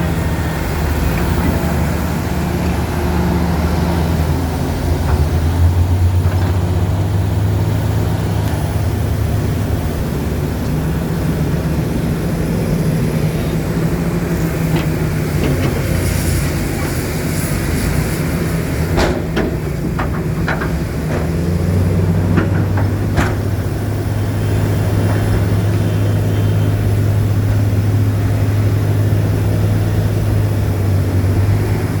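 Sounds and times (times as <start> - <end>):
diesel engine running: 0.0 - 32.0
metallic clanks and knocks: 14.3 - 25.5.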